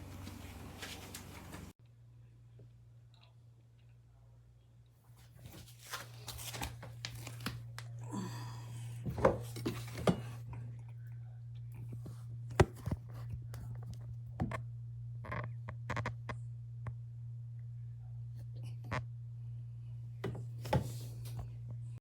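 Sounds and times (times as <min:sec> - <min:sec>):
crinkling and rustling: 0:00.0 - 0:01.8, 0:05.0 - 0:08.0
steady low hum: 0:00.0 - 0:22.0.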